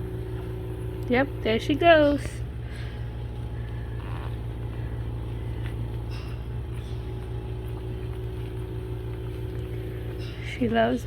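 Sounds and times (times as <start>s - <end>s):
steady low machine hum: 0.0s - 11.0s.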